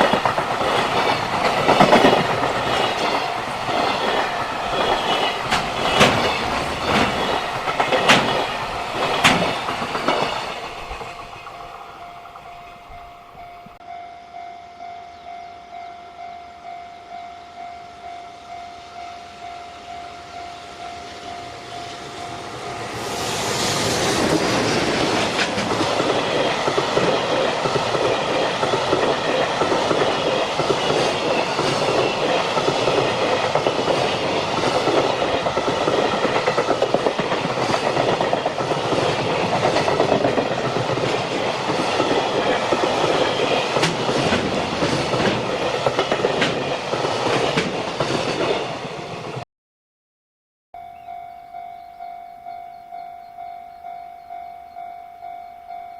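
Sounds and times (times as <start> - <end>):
wheels clacking over rail joints: 0.0 - 13.8, 23.6 - 48.8
level-crossing warning bell: 0.0 - 23.2, 50.8 - 55.9
freight train rumbling past: 0.0 - 49.4.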